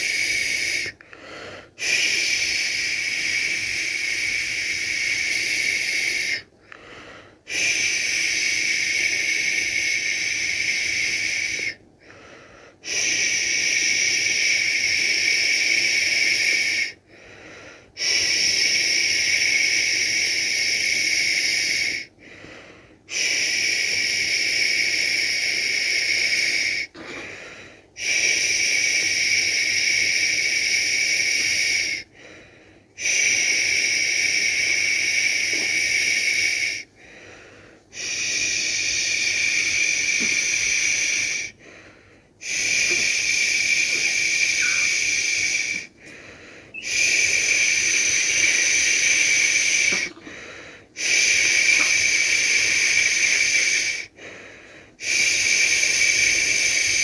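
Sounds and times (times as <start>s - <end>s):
person shushing: 37.9s - 41.5s, 42.4s - 45.9s, 46.8s - 50.4s.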